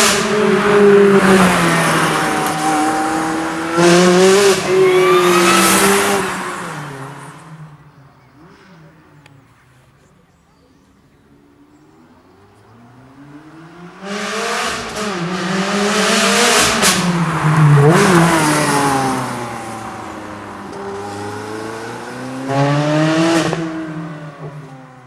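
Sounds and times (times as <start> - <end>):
car engine revving hard: 0.0 - 7.8, 12.8 - 24.7.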